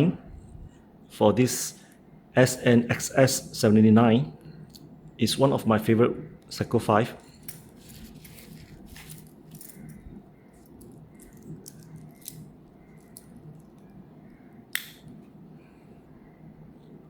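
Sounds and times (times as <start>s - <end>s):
metal watch bracelet clinking: 7.2s - 14.0s.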